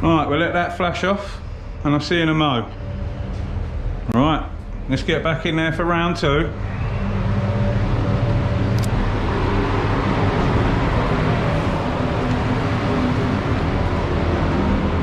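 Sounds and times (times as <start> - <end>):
fans droning: 0.0 - 15.0
low hum: 0.0 - 15.0
rushing air noise: 5.8 - 15.0.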